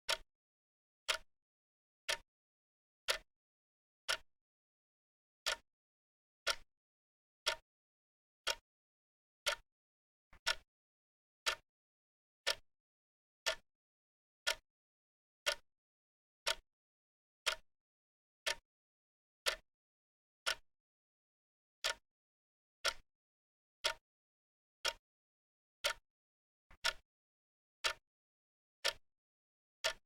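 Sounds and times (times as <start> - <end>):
clock ticking: 10.4 - 10.6, 26.8 - 27.0.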